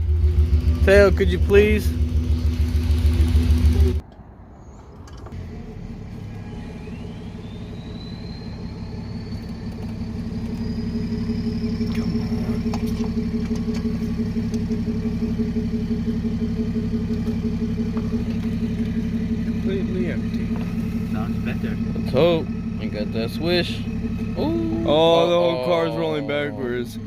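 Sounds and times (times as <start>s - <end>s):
car engine with blown muffler: 0.0s - 4.1s, 4.7s - 27.0s
faint rising whine: 2.3s - 12.6s.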